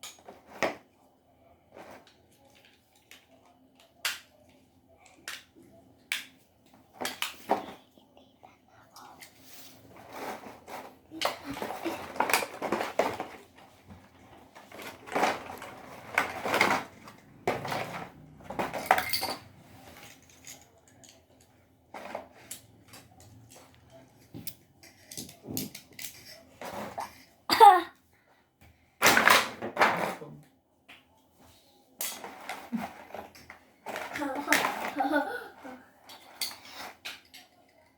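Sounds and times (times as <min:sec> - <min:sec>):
clatter and clicks of plastic pieces: 0:01.7 - 0:07.8, 0:10.0 - 0:27.3, 0:32.0 - 0:37.7.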